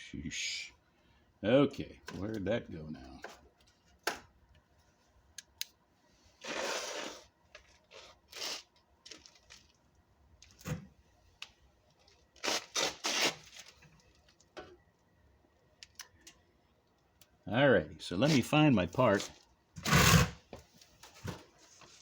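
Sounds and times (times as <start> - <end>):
rustling scrape: 6.4 - 8.6.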